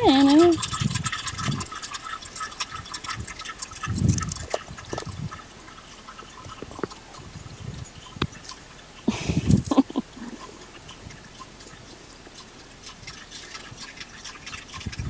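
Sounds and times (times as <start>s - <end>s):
soil crumbling and trickling: 0.2s - 8.8s.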